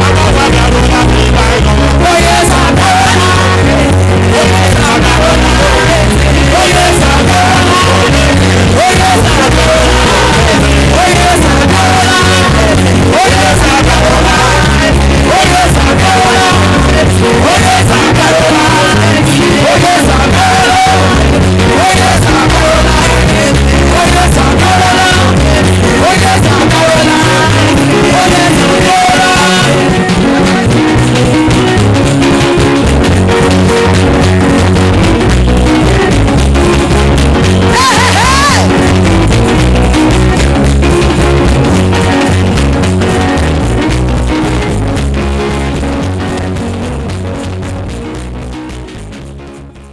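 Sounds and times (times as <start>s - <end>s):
music with singing: 0.0s - 49.9s.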